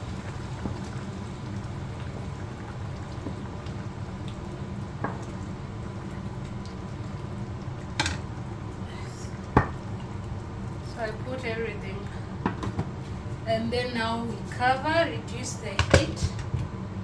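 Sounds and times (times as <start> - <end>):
water pouring into a pot: 0.0 - 12.4.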